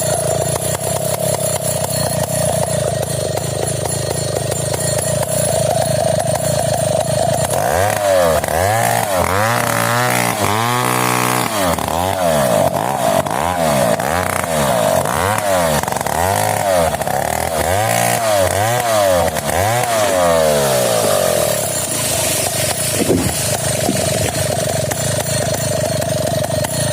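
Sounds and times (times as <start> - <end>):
chainsaw revving: 0.0 - 26.9.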